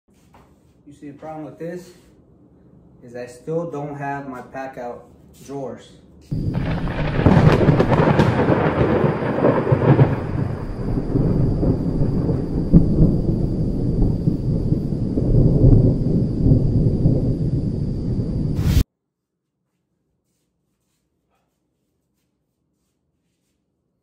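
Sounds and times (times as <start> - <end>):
faint high whine: 9.4 - 18.8.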